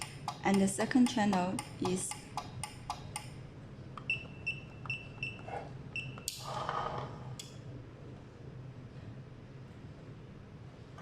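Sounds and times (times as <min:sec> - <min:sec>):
keypad beeps: 0:04.1 - 0:05.4, 0:06.0 - 0:06.3.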